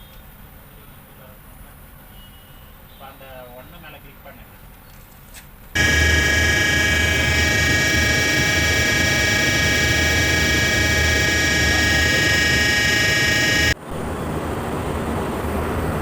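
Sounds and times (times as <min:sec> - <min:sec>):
low hum: 0:05.8 - 0:13.8
pump motor whining: 0:05.8 - 0:13.8
rough machine noise: 0:05.8 - 0:13.8.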